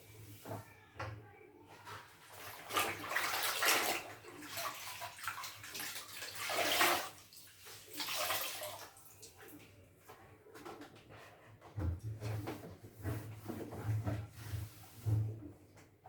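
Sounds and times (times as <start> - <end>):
water splashing in bucket: 2.2 - 9.3.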